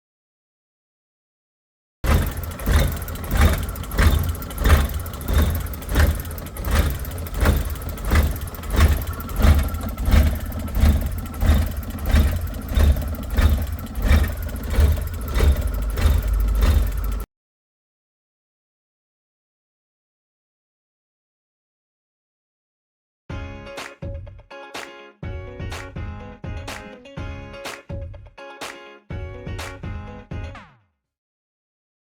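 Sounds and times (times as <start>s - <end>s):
small engine running roughly: 2.0s - 17.3s.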